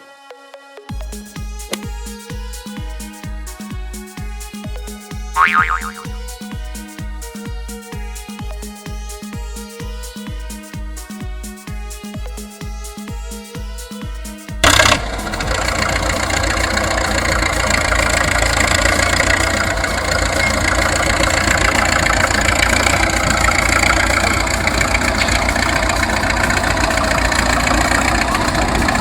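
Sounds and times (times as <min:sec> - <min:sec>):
vehicle engine idling: 0:14.6 - 0:29.0.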